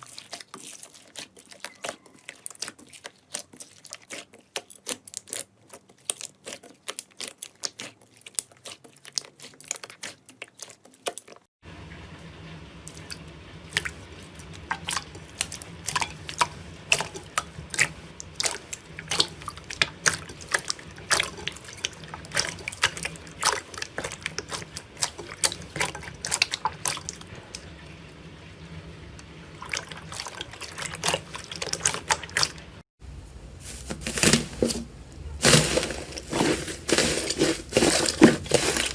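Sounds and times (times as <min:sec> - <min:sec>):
slime squelching and popping: 0:00.0 - 0:11.5, 0:14.7 - 0:27.3.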